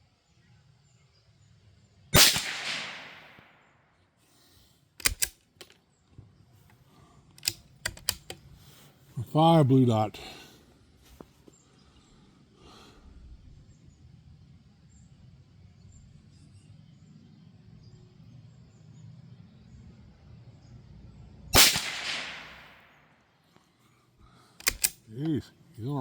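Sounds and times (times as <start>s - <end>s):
rifle shot crack: 2.2s - 3.7s, 21.6s - 23.1s.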